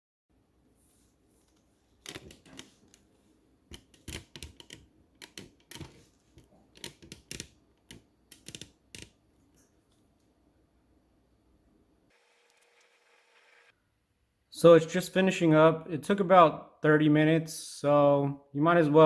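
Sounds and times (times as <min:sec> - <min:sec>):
faint room hiss: 0:00.3 - 0:06.8, 0:07.5 - 0:19.0
typing on computer keyboard: 0:03.7 - 0:09.2.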